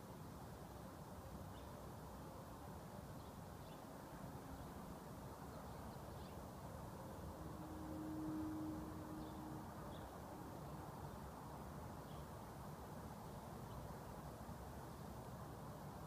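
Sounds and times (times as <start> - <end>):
low horn-like tone: 7.2 - 10.8.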